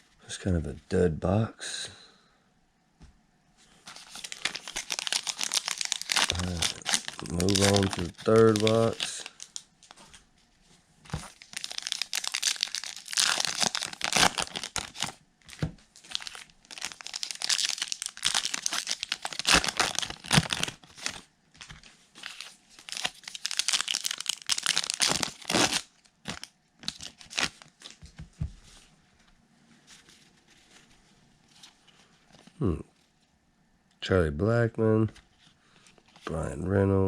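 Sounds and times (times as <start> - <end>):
plastic wrapping tearing and crinkling: 3.9 - 10.2, 11.1 - 28.0.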